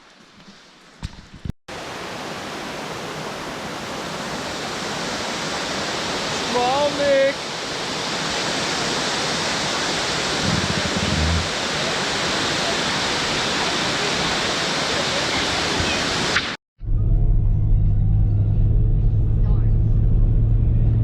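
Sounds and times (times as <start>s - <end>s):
waterfall roar: 1.8s - 16.5s
vehicle engine drone: 10.4s - 11.6s, 16.8s - 21.0s.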